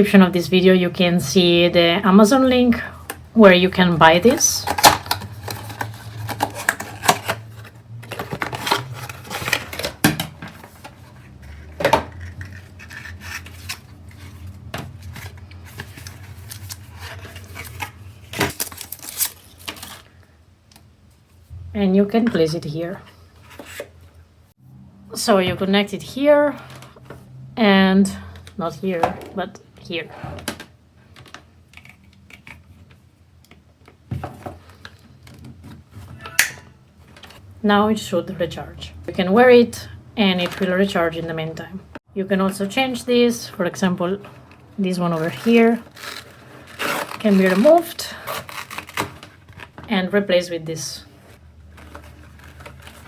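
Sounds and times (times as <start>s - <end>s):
packaging and plastic rubbing: 4.2s - 20.2s, 44.3s - 49.8s, 51.1s - 53.0s.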